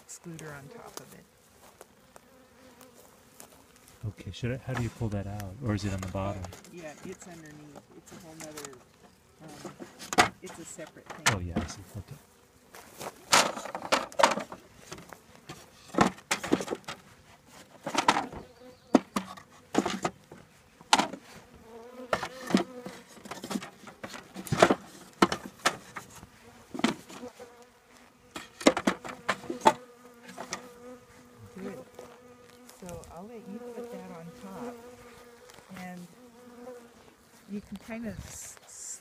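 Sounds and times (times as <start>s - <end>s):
honeybees buzzing: 0.0s - 39.0s
knocks of wooden hive parts: 9.6s - 11.8s, 13.0s - 21.3s, 22.1s - 27.4s, 28.3s - 30.7s.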